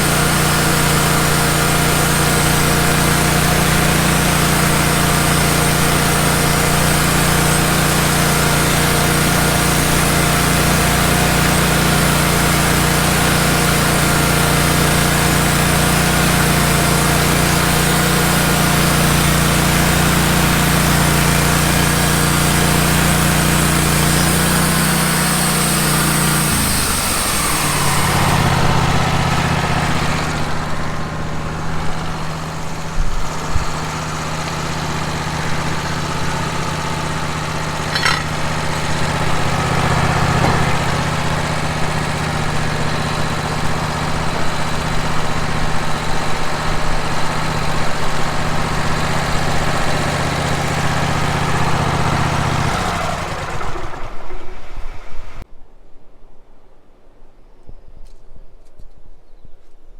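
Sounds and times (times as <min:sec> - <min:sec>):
high saw hiss: 0:00.0 - 0:30.4
band sawmill engine drone: 0:00.0 - 0:55.4.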